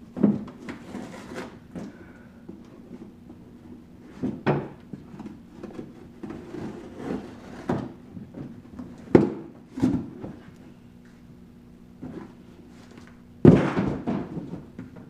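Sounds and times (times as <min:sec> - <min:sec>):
objects knocking and thumping: 0:04.1 - 0:06.8, 0:13.4 - 0:15.0.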